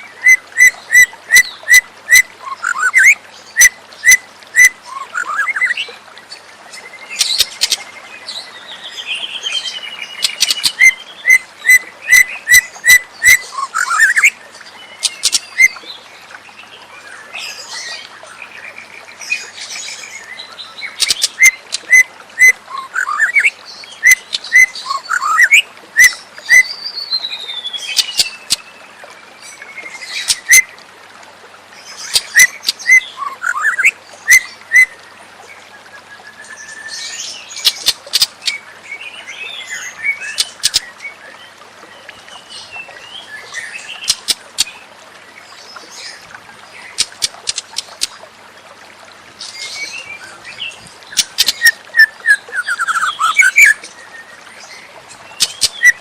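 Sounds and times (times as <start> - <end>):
songbird whistling and clicking: 10.2 - 14.3, 15.0 - 15.8, 21.0 - 26.7, 27.9 - 28.6, 37.6 - 38.6, 40.3 - 40.9, 44.1 - 44.7, 46.9 - 48.2, 51.1 - 54.0, 55.4 - 56.0.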